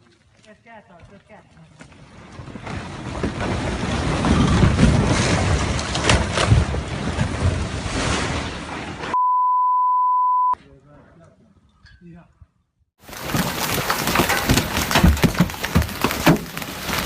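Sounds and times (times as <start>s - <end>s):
rockslide rumble: 1.8s - 8.9s, 13.0s - 17.0s
censor bleep tone: 9.2s - 10.6s
rock cracks: 13.0s - 17.0s.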